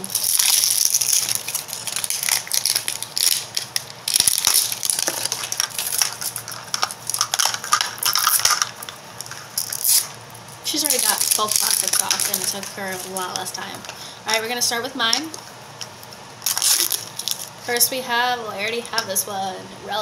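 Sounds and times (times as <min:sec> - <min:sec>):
plastic wrap crinkling: 0:00.0 - 0:14.0, 0:16.0 - 0:17.7.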